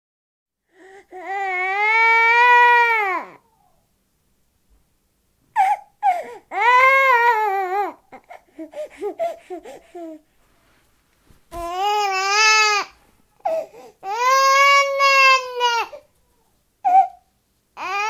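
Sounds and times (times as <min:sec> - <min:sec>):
baby crying: 0:00.8 - 0:03.8, 0:05.6 - 0:10.2, 0:11.6 - 0:18.0.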